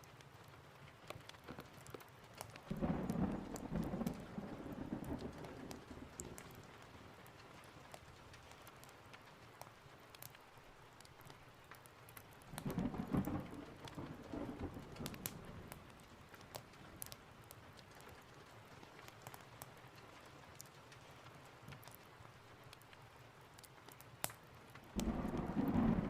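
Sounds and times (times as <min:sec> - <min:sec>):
steady rain: 0:00.0 - 0:26.0
wood fire crackling: 0:00.0 - 0:26.0
low roll of thunder: 0:02.7 - 0:06.8, 0:12.5 - 0:16.1, 0:25.0 - 0:26.0.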